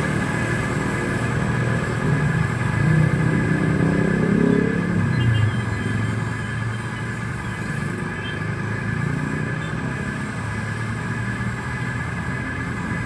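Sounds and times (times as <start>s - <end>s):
motor hum with high whine: 0.0s - 13.0s.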